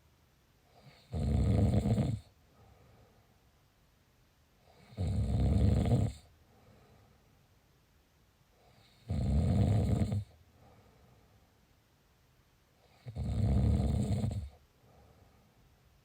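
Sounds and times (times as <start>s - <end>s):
loud snores: 0.8s - 2.3s, 4.7s - 6.3s, 8.6s - 10.4s, 12.8s - 14.6s.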